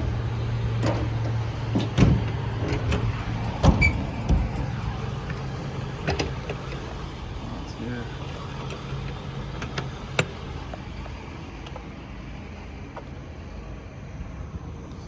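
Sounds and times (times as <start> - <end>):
diesel engine idling: 0.0 - 15.0.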